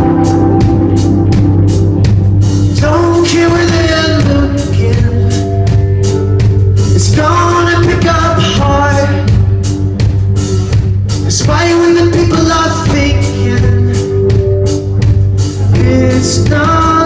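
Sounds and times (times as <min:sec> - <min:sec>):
rock band playing: 0:00.0 - 0:17.0
person singing: 0:02.4 - 0:09.7, 0:11.2 - 0:14.6, 0:15.6 - 0:17.0.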